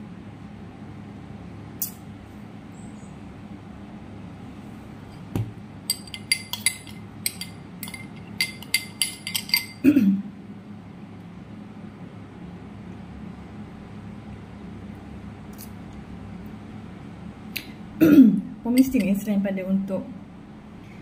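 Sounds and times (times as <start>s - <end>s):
single knock: 5.3s - 5.6s
spoon clinking against glass: 5.9s - 9.8s.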